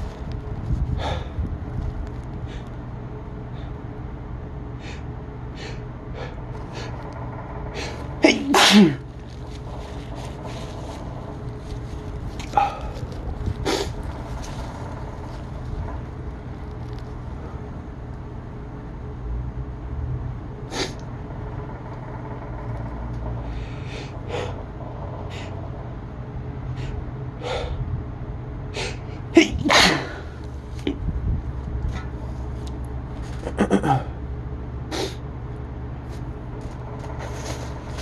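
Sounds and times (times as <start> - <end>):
steady low hum: 0.0 - 38.0
person sneezing: 8.2 - 9.1, 28.9 - 30.3.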